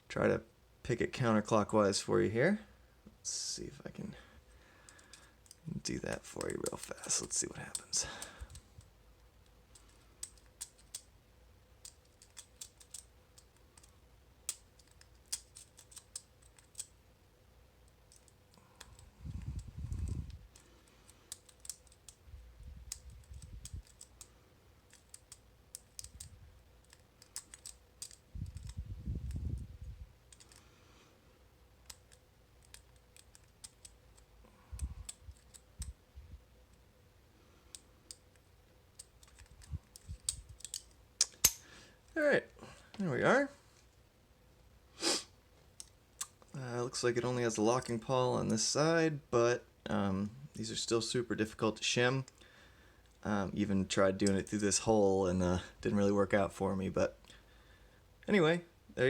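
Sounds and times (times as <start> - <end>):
lock pick metal clicks and scrapes: 6.2 - 11.1, 11.8 - 17.0, 19.9 - 22.2, 22.9 - 24.3, 24.9 - 29.6, 31.8 - 36.0, 37.7 - 41.6.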